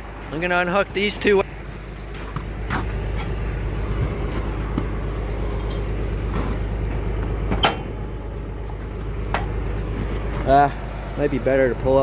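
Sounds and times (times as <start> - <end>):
tractor engine running: 0.0 - 12.0.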